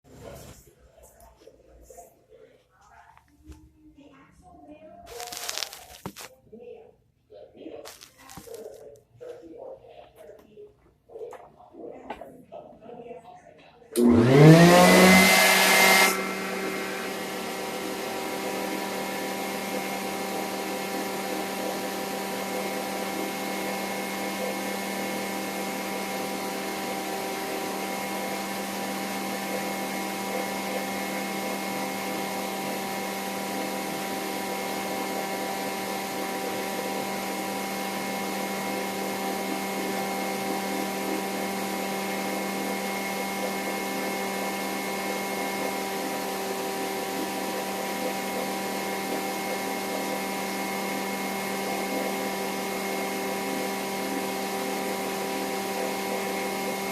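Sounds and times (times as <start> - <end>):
vacuum cleaner motor whine: 5.1 - 6.3, 14.0 - 56.9.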